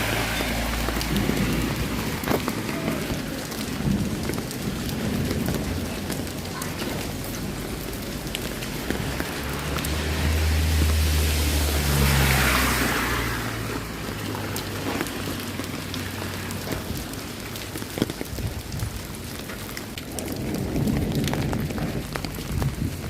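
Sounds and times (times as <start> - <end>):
vehicle engine hum: 0.0 - 4.5, 5.1 - 18.1
rain falling: 0.0 - 23.0
tyres hissing on wet road: 0.0 - 23.0.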